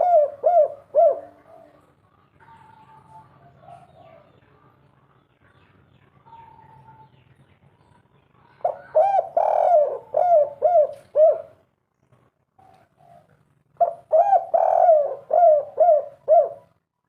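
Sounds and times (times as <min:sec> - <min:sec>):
dove cooing: 0:00.0 - 0:04.8, 0:08.5 - 0:11.6, 0:12.6 - 0:16.8.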